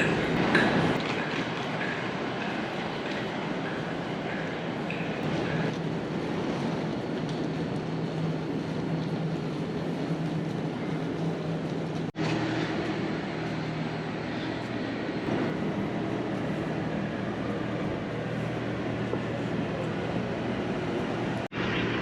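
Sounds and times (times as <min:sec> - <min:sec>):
train rumbling: 0:00.0 - 0:22.0.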